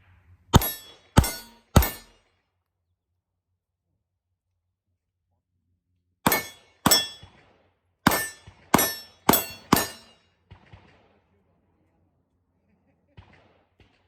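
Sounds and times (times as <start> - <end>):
pistol shots: 0.6 - 2.1, 6.3 - 7.3, 8.1 - 11.1.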